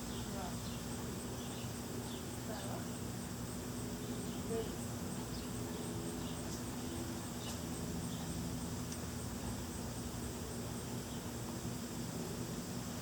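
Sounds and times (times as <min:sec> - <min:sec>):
insects chirping: 0:00.0 - 0:13.0
light ticks: 0:08.9 - 0:09.1.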